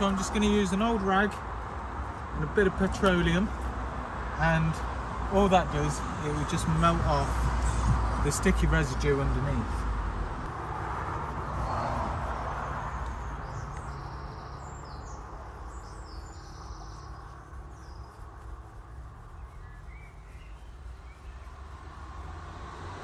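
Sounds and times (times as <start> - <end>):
small birds chirping: 0.0 - 1.4, 11.2 - 22.7
steady low rumble: 0.0 - 23.0.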